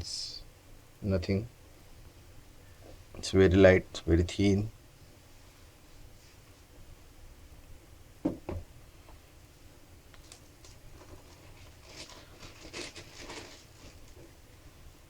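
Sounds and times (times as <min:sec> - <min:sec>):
laptop handling knocks: 0:08.2 - 0:08.7.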